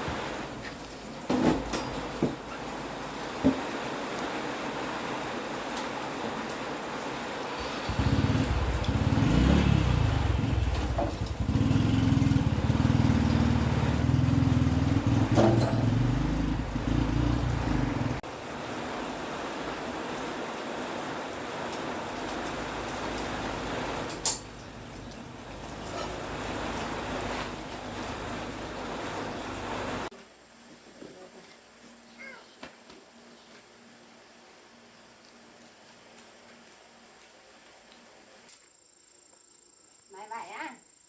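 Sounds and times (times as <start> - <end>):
small motorbike engine running: 7.6 - 18.2.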